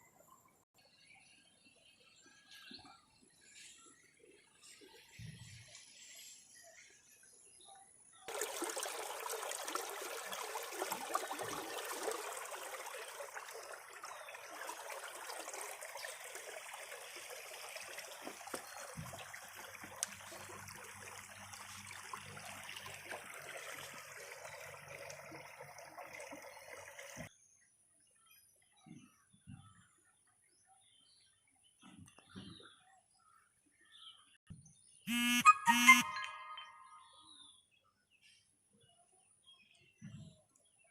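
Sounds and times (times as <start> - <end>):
water gushing from a pump: 8.3 - 27.3.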